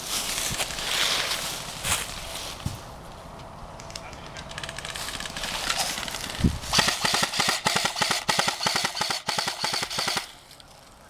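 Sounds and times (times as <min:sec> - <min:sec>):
airsoft guns firing full auto: 0:03.8 - 0:10.7.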